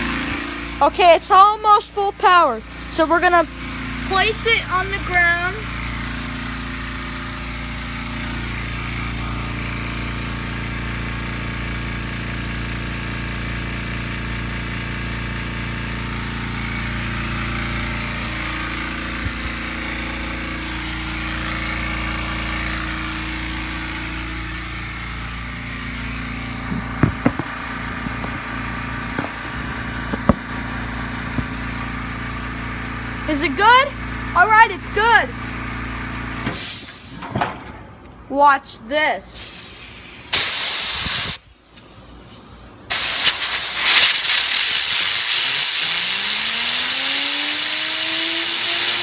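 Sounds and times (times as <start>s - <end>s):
air compressor running: 0.0s - 38.3s, 39.3s - 49.0s
sharp knocks: 26.6s - 28.4s.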